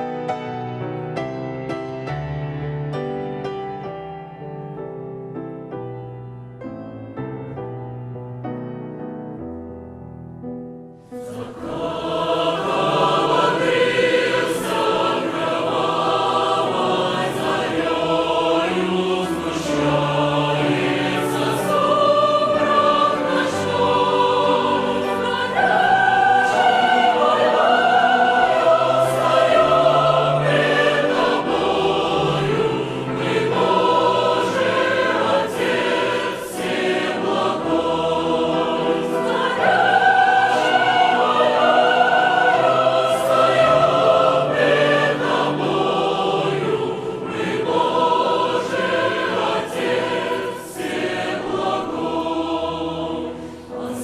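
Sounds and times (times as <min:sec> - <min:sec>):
choir singing a slow hymn: 0:11.1 - 0:54.0.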